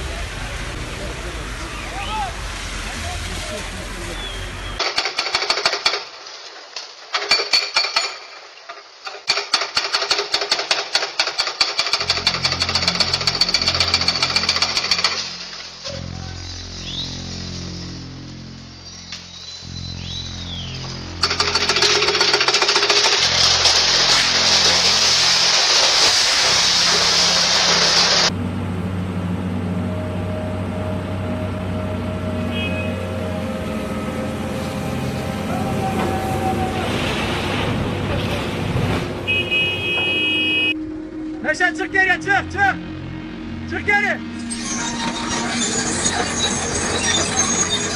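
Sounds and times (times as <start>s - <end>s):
hydraulic breaker hammering concrete: 4.8s - 6.1s, 9.1s - 15.3s, 21.2s - 26.0s
heavy machinery diesel engine: 11.4s - 19.2s, 20.4s - 41.4s
low engine hum: 26.8s - 43.7s.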